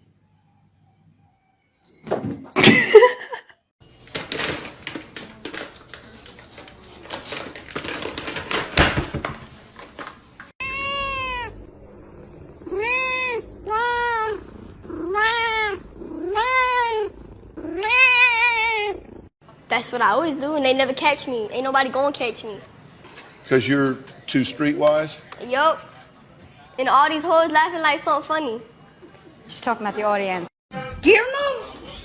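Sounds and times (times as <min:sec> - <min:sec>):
cat meowing: 0:10.6 - 0:11.7, 0:12.6 - 0:19.2.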